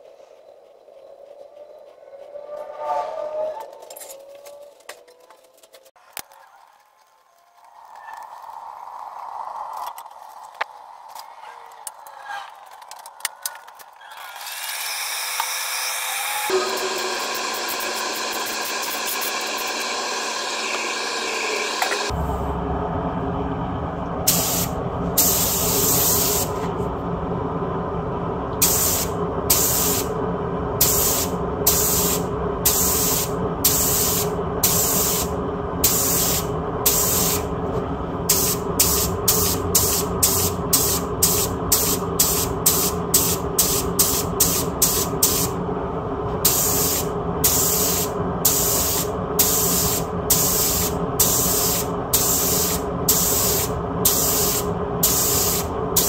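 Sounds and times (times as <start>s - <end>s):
steady low hum: 16.5s - 56.0s
aerosol spray can hissing: 24.3s - 26.5s, 28.6s - 30.1s, 30.8s - 37.4s, 38.3s - 45.5s, 46.5s - 56.0s.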